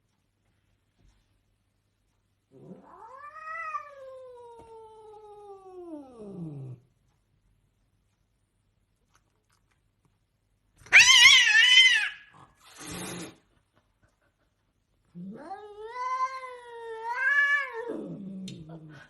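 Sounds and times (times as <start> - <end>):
cat yowling: 10.8 - 12.3, 15.2 - 18.2.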